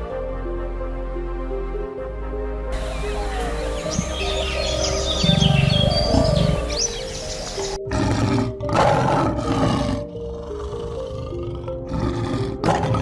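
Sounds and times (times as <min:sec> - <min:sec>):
background music with held notes: 0:00.0 - 0:13.0
big cat roaring: 0:07.8 - 0:13.0.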